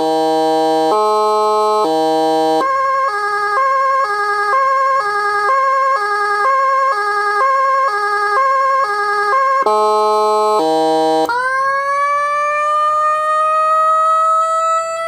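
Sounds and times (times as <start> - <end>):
two-tone hi-lo electronic siren: 0.0 - 15.0.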